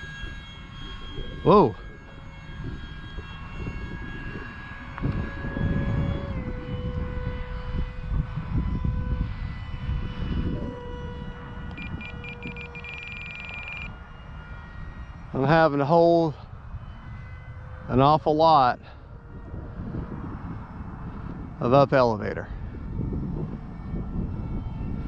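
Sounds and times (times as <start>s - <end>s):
electric ducted fans whining: 0.0s - 25.0s
wind rumble on microphone: 0.0s - 25.0s
rapid high electronic beeps: 11.8s - 13.9s.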